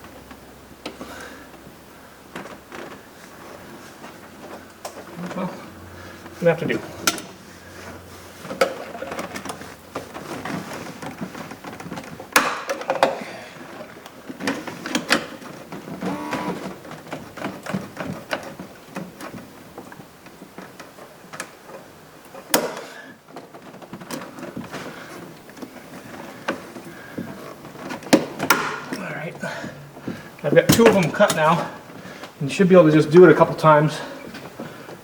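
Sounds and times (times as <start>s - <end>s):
metal parts knocking: 27.2s - 31.8s.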